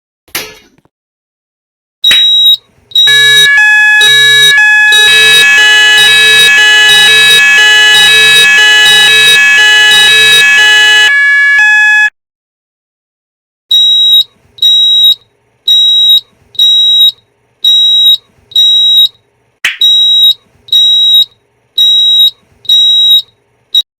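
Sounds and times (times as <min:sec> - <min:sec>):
fire alarm pulsed beeping: 0:02.0 - 0:12.1, 0:13.7 - 0:19.2, 0:19.8 - 0:23.9
sharp click: 0:02.1 - 0:02.4, 0:19.6 - 0:19.9.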